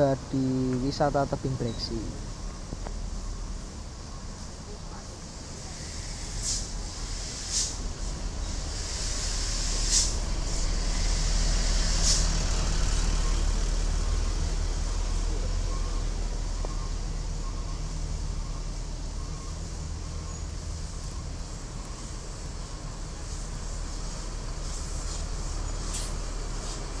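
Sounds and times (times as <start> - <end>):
bus diesel engine running: 0.0 - 27.0
air-brake hisses: 5.4 - 13.2, 23.2 - 27.0.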